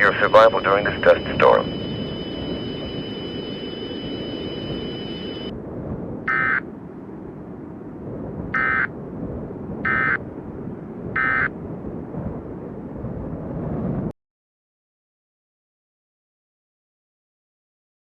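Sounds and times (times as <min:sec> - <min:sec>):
electronic data bursts: 0:00.0 - 0:05.5, 0:06.3 - 0:06.6, 0:08.6 - 0:08.9, 0:09.9 - 0:10.2, 0:11.2 - 0:11.5
high steady tones: 0:00.0 - 0:05.5
steady low rumble: 0:00.0 - 0:14.1.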